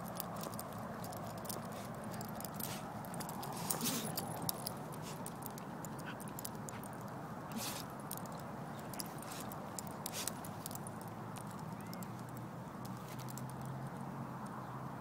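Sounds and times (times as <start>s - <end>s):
grass rustling: 0.0s - 13.7s
dog sniffing: 1.5s - 8.0s, 8.8s - 10.7s.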